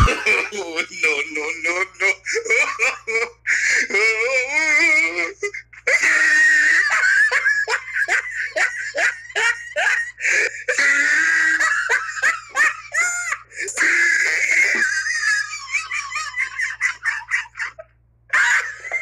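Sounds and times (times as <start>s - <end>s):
person laughing: 0.0s - 19.0s.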